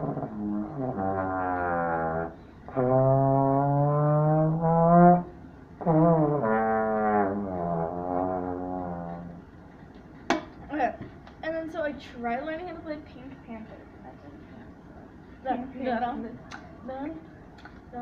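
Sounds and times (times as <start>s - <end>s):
trombone long low notes: 0.0s - 9.6s.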